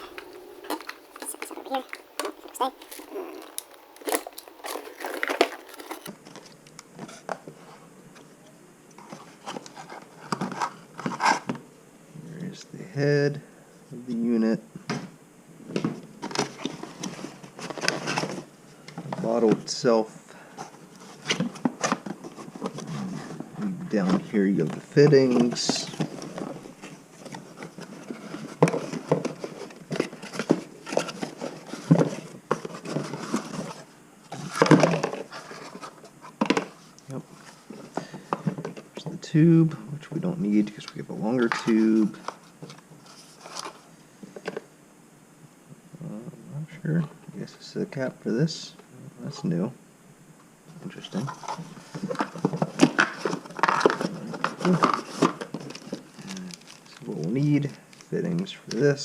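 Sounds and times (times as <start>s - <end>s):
plastic packaging crinkling: 0.0s - 6.2s, 51.2s - 58.2s
plastic parts clicking and rustling: 0.0s - 6.2s, 51.1s - 58.1s.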